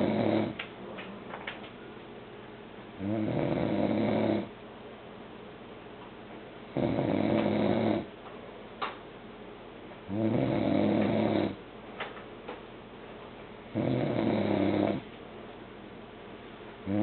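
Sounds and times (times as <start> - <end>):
man snoring: 0.0 - 0.6, 3.0 - 4.5, 6.8 - 8.1, 10.1 - 11.6, 13.7 - 15.0.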